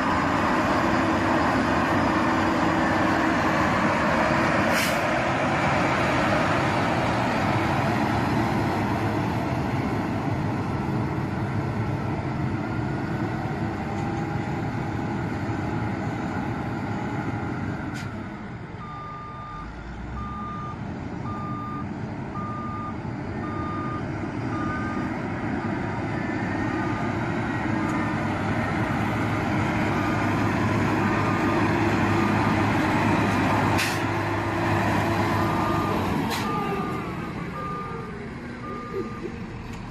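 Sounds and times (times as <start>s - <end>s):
heavy construction machinery running: 0.0s - 39.9s
reversing alarm beeping: 18.8s - 27.2s, 35.4s - 39.3s.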